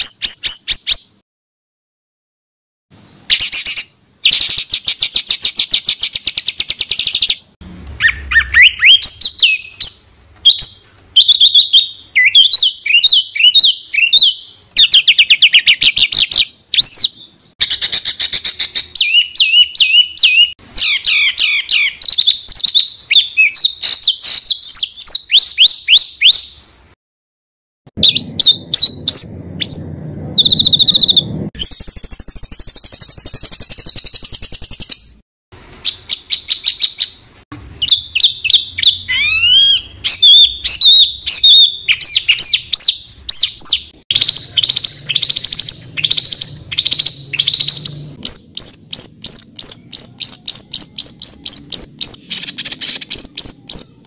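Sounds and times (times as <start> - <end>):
songbird fast trills: 3.3 - 26.5, 28.0 - 35.1, 37.8 - 54.0
songbird whistled notes: 8.0 - 26.6, 28.0 - 35.2, 37.8 - 54.0.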